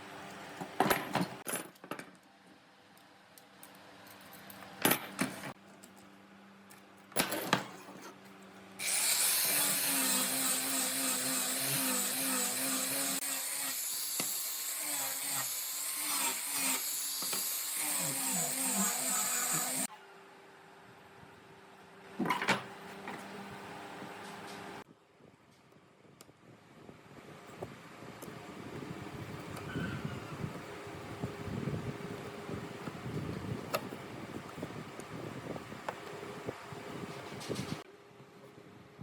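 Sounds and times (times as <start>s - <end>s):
power tool working wood: 8.8s - 19.9s.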